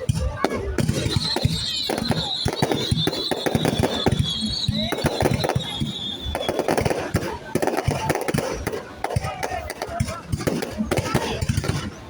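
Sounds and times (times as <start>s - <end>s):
fireworks cracks and bangs: 0.0s - 12.0s
high wavering whistle: 1.0s - 6.6s.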